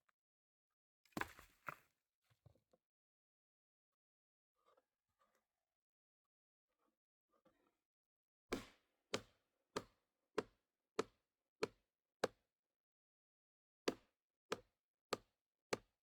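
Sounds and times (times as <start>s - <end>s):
tool striking into a log: 8.5s - 12.4s.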